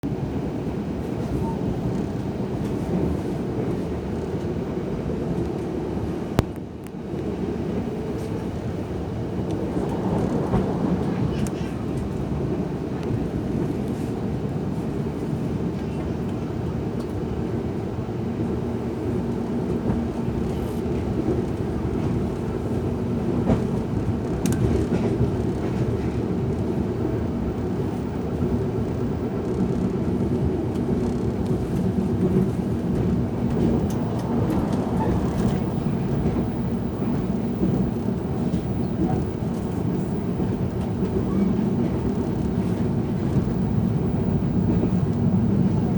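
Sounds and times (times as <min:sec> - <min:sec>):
train wheels rumbling on rail: 0:00.0 - 0:45.9.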